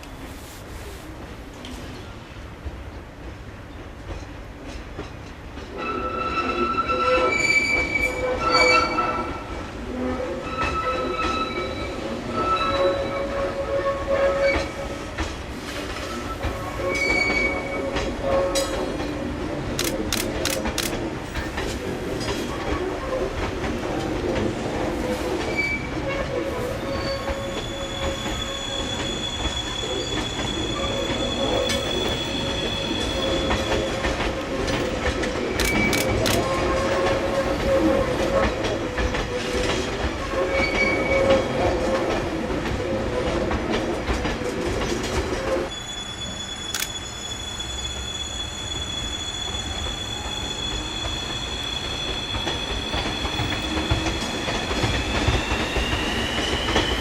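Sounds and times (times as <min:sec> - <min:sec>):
train wheel squeal: 0:03.9 - 0:57.0
wheel clicks over track: 0:35.6 - 0:36.5.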